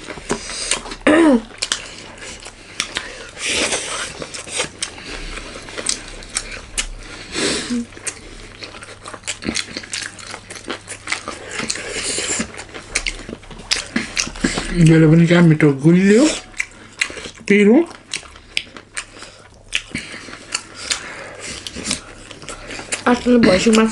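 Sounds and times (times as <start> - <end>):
moist chewing and smacking: 0.0 - 15.5, 16.1 - 23.9
person humming mm: 1.0 - 1.6, 7.4 - 7.9.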